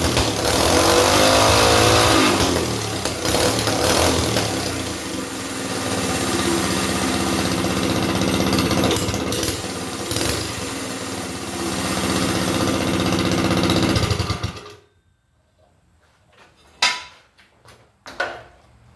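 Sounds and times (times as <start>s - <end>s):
small gas engine running: 0.0s - 14.9s.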